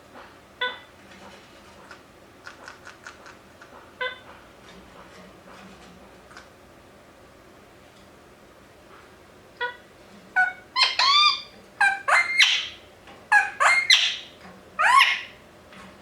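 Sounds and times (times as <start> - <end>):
parakeet shrill calls: 10.4 - 15.4.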